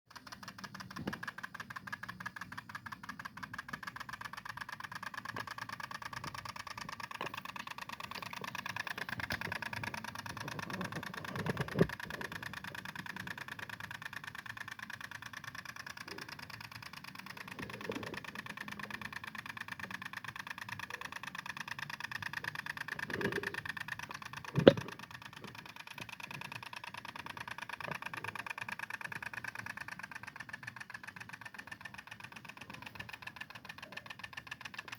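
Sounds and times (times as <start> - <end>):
tiller engine running: 0.2 - 34.9.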